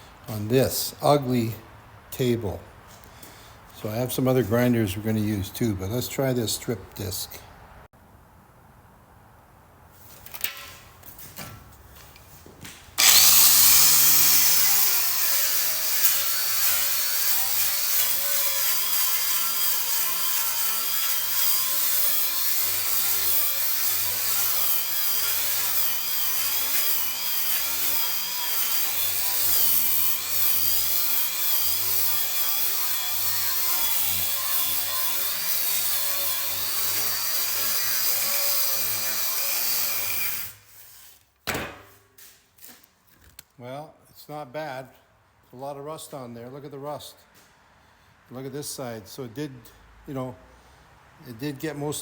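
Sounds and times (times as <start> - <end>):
angle grinder stripping rust: 13.0 - 41.4.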